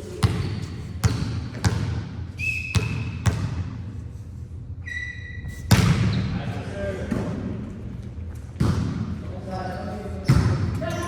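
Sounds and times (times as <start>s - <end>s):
ball bouncing on gym court: 0.0s - 3.8s, 5.5s - 6.4s, 8.4s - 9.3s, 10.2s - 11.0s
sneaker squeaks on court floor: 2.4s - 3.4s, 4.8s - 6.4s, 10.2s - 11.0s.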